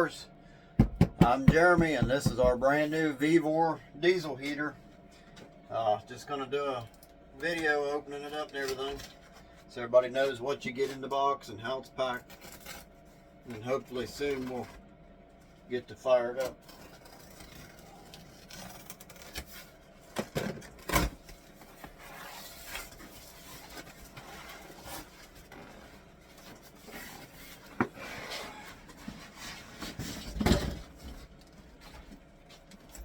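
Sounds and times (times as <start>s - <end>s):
knocks: 0.8s - 2.6s
packaging rustling and scraping: 15.6s - 33.0s.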